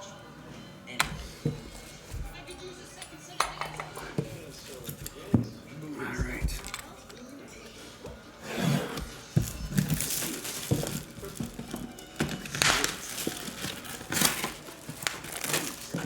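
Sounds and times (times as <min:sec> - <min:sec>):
boxes knocking and clicking: 0:06.2 - 0:06.9
packaging crinkling and tearing: 0:09.4 - 0:16.0.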